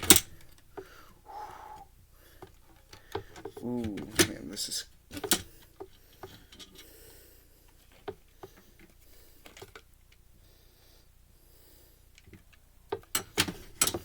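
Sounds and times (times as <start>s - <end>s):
faint clicks and taps of parts: 2.3s - 7.0s, 7.6s - 10.3s, 12.1s - 14.0s.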